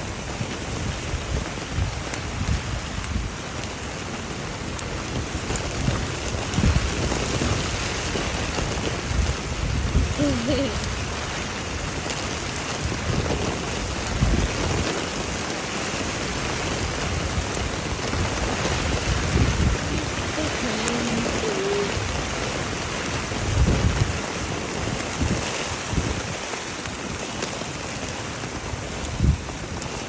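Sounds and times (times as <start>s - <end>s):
rain falling: 0.0s - 30.0s
low rumbles: 16.4s - 24.3s.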